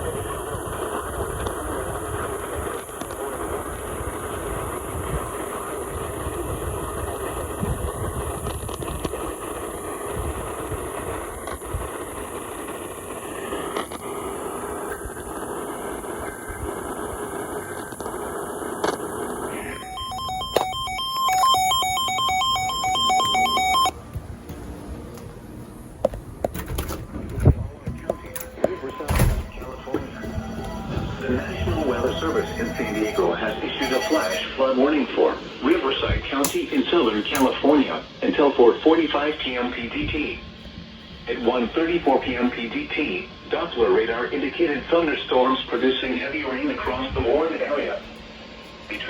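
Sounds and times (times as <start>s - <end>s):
radio hiss and static: 0.0s - 24.0s, 25.9s - 49.0s
emergency alert beeping tones: 19.5s - 24.0s, 28.3s - 34.6s.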